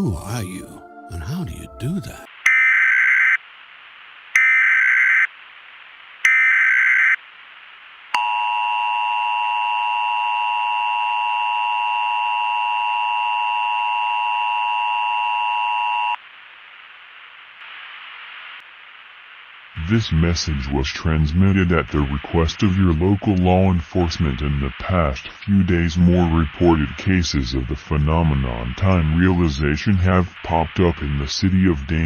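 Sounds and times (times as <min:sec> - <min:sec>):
faint hiss: 0:16.2 - 0:32.0.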